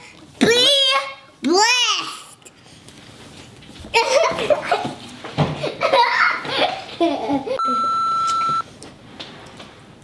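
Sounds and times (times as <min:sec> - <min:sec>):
child talking and laughing: 0:00.4 - 0:02.5, 0:03.9 - 0:07.7
steady electronic beep: 0:07.6 - 0:08.6.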